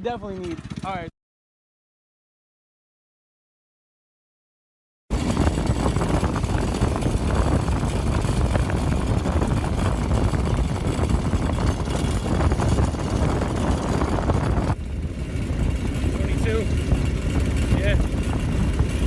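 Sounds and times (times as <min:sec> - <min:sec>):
go-kart engine running: 0:00.2 - 0:01.1, 0:05.1 - 0:19.0.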